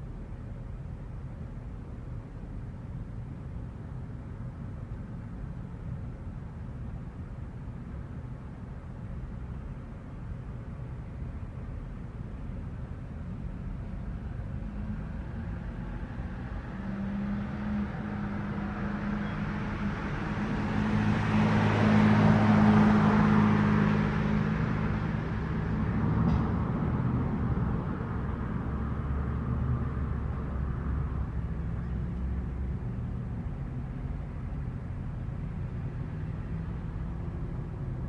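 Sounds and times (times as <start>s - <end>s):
low engine hum: 0.0s - 38.0s
car passing: 14.5s - 38.0s.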